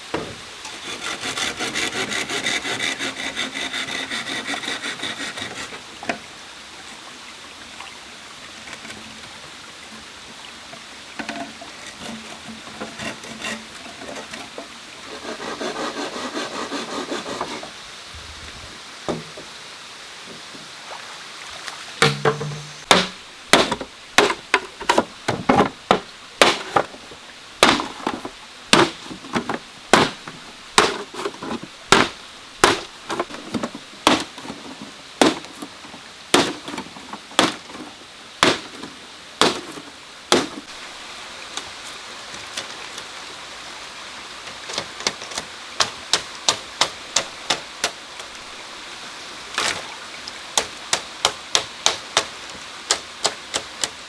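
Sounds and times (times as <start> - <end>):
steady hiss: 0.0 - 54.0
hand tool chopping wood: 22.0 - 34.6, 35.2 - 35.7, 36.3 - 40.7, 44.7 - 48.0, 50.6 - 54.0.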